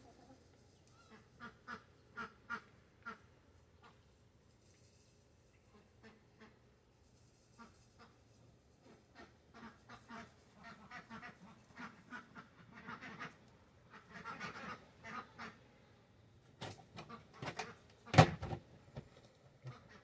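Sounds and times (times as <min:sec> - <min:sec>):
ducks quacking: 0:08.9 - 0:15.6.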